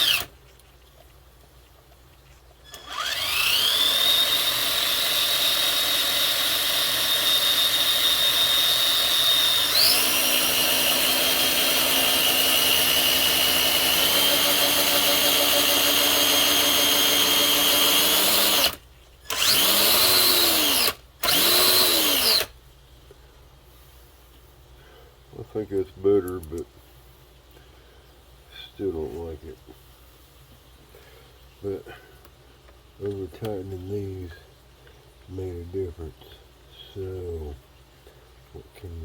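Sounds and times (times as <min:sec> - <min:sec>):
electric motor high whine: 0:02.7 - 0:10.4, 0:14.2 - 0:22.5.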